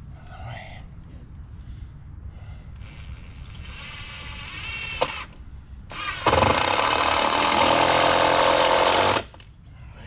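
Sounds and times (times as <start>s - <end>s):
electric drill whirring: 2.8s - 5.3s, 5.9s - 9.3s.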